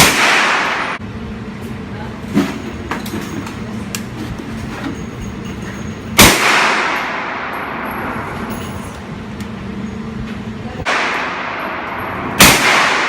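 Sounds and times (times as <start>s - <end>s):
gunshot with echo: 0.0s - 1.0s, 6.2s - 7.5s, 10.9s - 13.0s.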